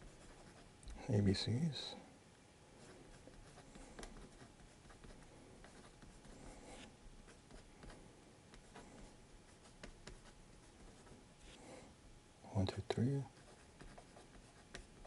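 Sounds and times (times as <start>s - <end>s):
pencil scratching on paper: 0.0s - 0.6s, 2.8s - 8.0s, 8.6s - 11.2s, 13.3s - 15.0s.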